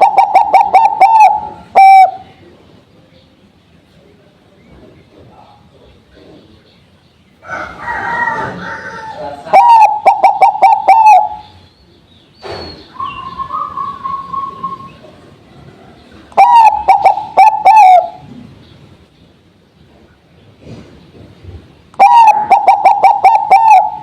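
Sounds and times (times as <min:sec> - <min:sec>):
dove cooing: 0:00.0 - 0:02.4, 0:09.2 - 0:11.6, 0:13.0 - 0:18.5, 0:22.0 - 0:24.0.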